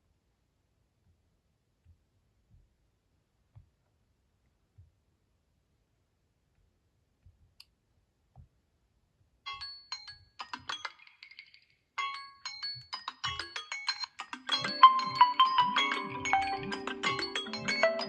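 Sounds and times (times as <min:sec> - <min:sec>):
chiming phone ringtone: 0:12.0 - 0:18.0.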